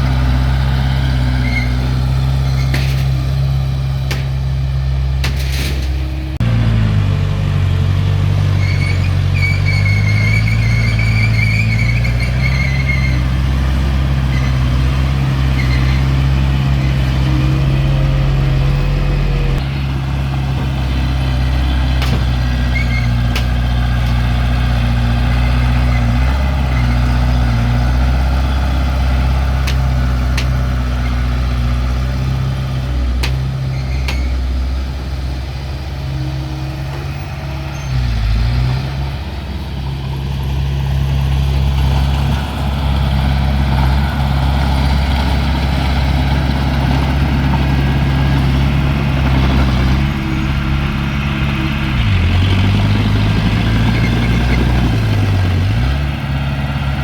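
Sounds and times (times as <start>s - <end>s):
diesel engine running: 0.0s - 57.0s
faint high squeal: 37.0s - 38.2s.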